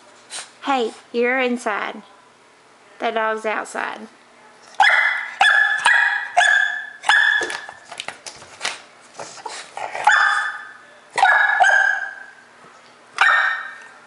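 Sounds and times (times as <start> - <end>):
puppy barking: 4.8 - 7.8, 10.0 - 12.4, 13.2 - 13.9
puppy yelping: 4.8 - 7.8, 10.0 - 12.4, 13.2 - 13.9.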